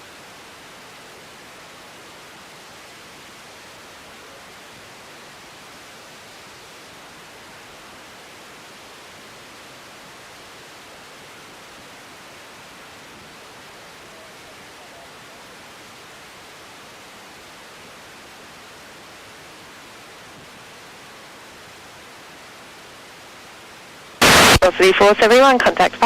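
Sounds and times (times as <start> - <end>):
radio static hiss: 3.6 - 5.4, 10.6 - 26.0.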